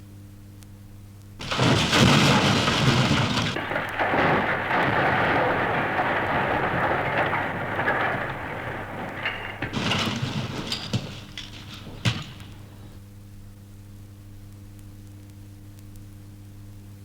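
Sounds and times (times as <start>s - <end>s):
rushing rain-like noise: 1.4s - 13.0s
sharp clicks and knocks: 1.4s - 13.0s.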